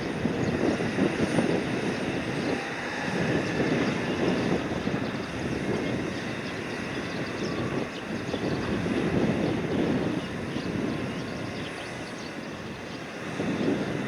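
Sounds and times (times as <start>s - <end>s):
crane machinery drone: 0.0s - 14.0s.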